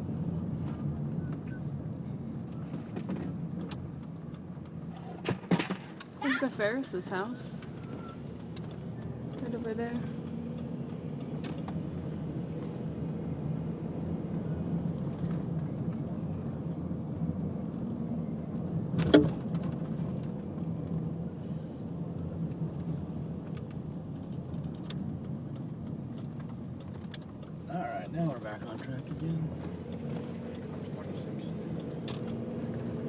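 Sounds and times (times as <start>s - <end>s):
road and engine hum in a cabin: 0.0s - 33.0s
small clicks and rattles: 22.5s - 33.0s.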